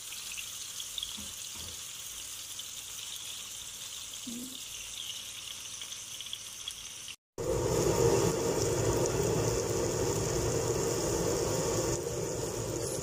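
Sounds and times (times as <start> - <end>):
chicken sizzling in hot oil: 0.0 - 13.0
steady rushing hum: 7.4 - 13.0.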